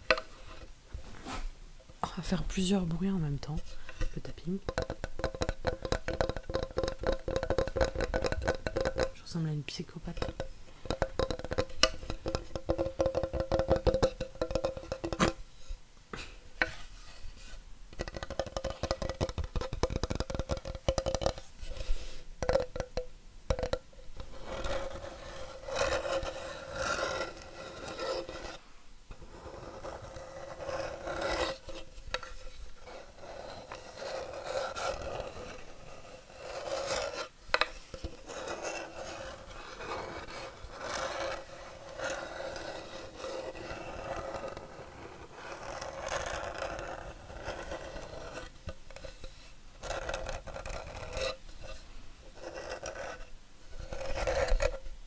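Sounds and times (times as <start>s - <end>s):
fingernails scratching wood: 24.4s - 28.6s.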